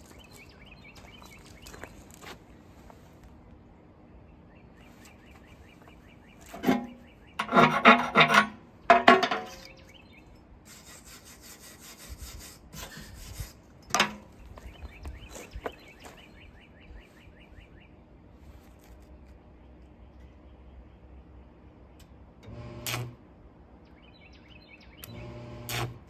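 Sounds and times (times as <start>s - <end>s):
rough scraping on metal: 6.5s - 9.8s, 10.7s - 14.2s.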